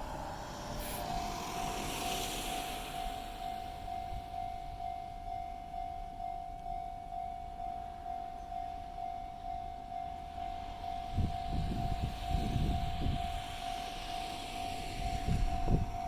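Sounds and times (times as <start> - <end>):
approaching train rushing: 0.0 - 16.0
level crossing warning bell ringing: 3.5 - 14.1.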